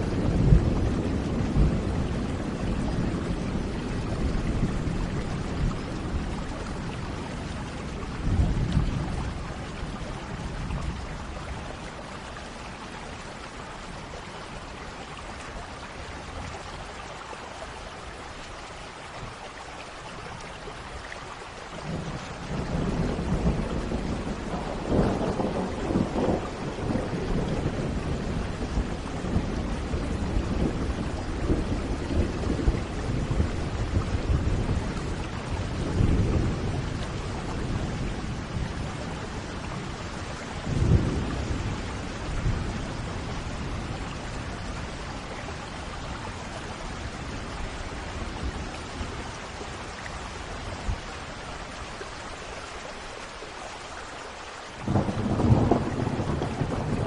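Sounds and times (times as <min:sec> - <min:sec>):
rolling thunder: 0:00.0 - 0:11.8, 0:21.9 - 0:45.9, 0:54.8 - 0:57.0
heavy rain: 0:00.0 - 0:57.0.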